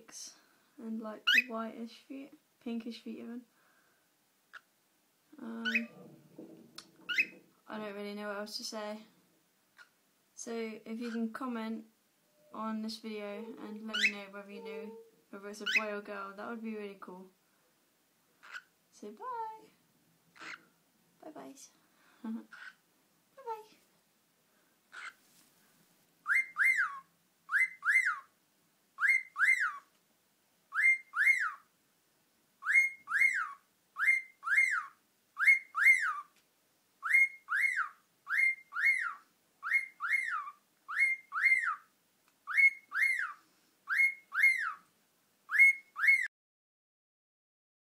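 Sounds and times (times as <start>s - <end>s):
cockatiel double chirp: 7.1s - 7.4s, 26.2s - 28.3s, 29.0s - 29.8s, 30.7s - 31.6s, 32.6s - 36.3s, 37.0s - 41.8s, 42.5s - 44.8s, 45.5s - 46.3s.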